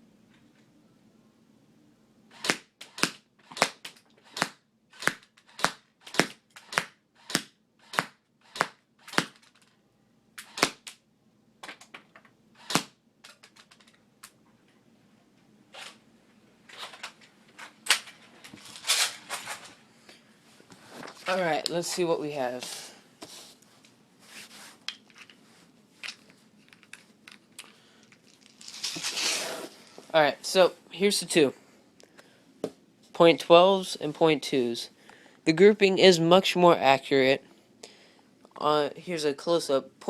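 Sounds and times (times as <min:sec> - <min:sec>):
airsoft gun shots: 0:02.3 - 0:09.4, 0:10.4 - 0:11.0, 0:12.6 - 0:13.0.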